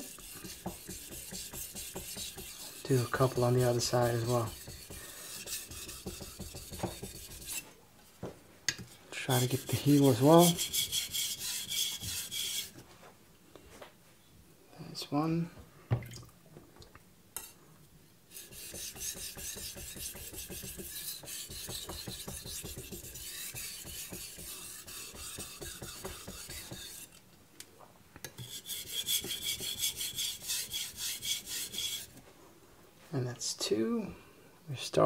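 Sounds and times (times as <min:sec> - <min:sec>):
knife scraping on whetstone: 0:00.0 - 0:07.7, 0:08.8 - 0:12.8, 0:18.3 - 0:27.2, 0:28.4 - 0:32.2.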